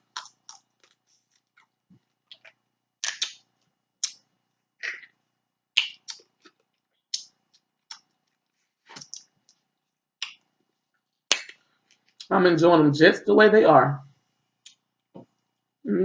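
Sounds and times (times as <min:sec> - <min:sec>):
crab legs cracking: 0:00.0 - 0:03.4.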